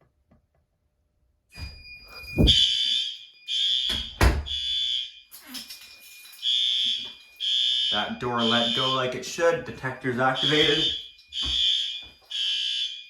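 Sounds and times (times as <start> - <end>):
fire alarm horns pulsing: 2.1 - 5.2, 6.4 - 13.0.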